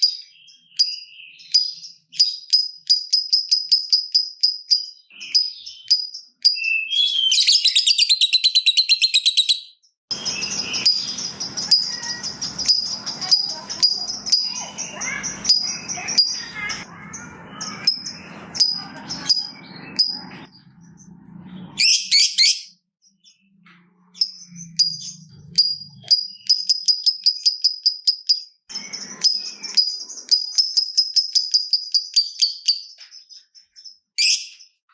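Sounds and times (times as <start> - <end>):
lovebird chirping: 0.0 - 34.9
lovebird rattling trill: 10.1 - 20.3.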